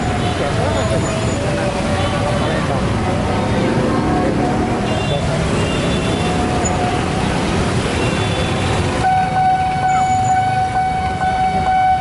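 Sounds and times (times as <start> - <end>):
crossing siren warning tone: 8.0 - 12.0.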